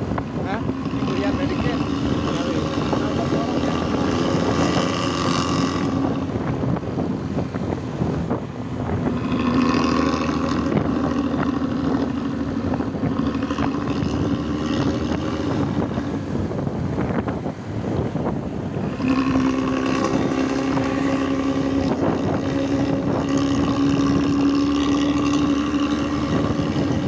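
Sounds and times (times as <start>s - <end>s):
bus engine rumbling: 0.0s - 27.0s.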